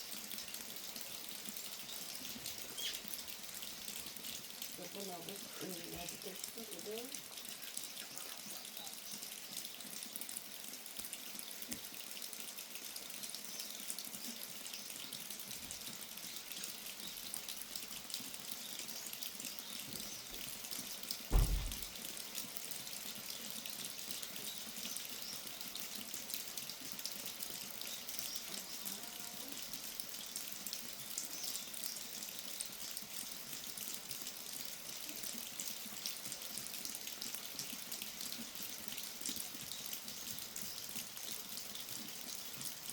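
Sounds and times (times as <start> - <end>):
rain falling and dripping: 0.0 - 42.9
low thump: 21.3 - 21.9.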